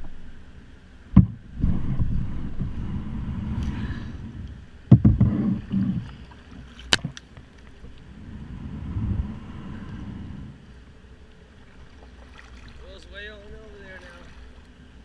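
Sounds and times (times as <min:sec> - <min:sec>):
paddle sloshing water: 0:05.2 - 0:08.2, 0:09.6 - 0:15.0.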